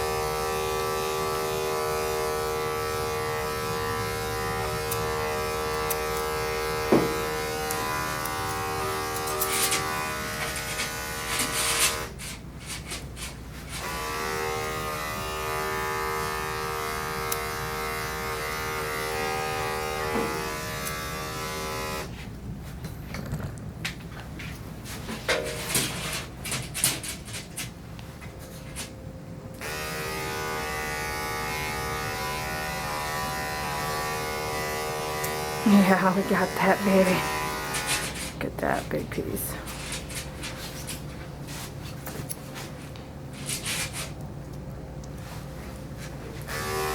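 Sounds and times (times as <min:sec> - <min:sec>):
electric clippers humming: 0:00.0 - 0:22.3, 0:29.6 - 0:41.2, 0:46.4 - 0:46.9.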